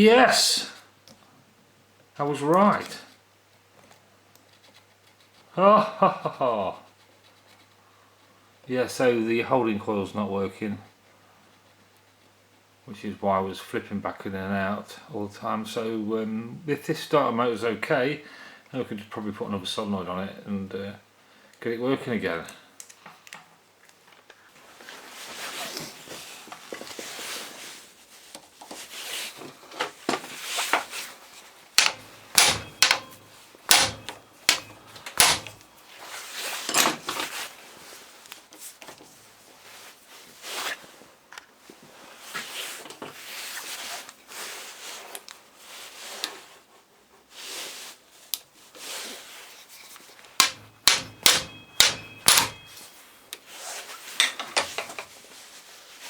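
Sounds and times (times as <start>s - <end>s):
metal tools knocking and clicking: 31.8s - 35.6s, 50.4s - 52.8s.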